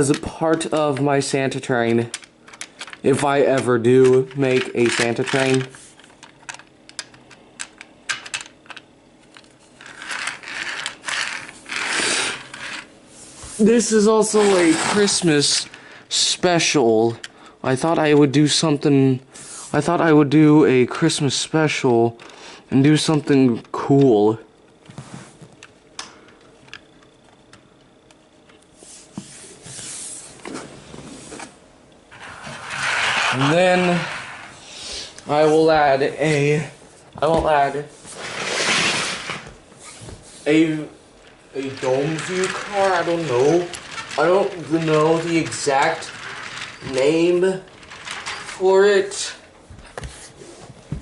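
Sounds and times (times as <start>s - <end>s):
short scraping: 32.1s - 35.6s
model train cars clicking: 41.6s - 49.3s.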